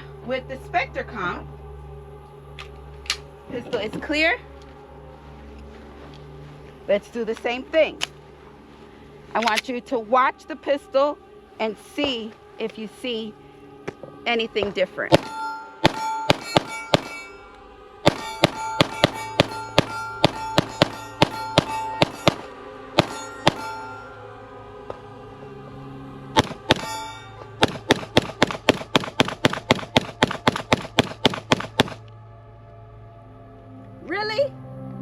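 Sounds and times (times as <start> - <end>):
pistol shots: 15.1 - 17.3, 18.1 - 23.9.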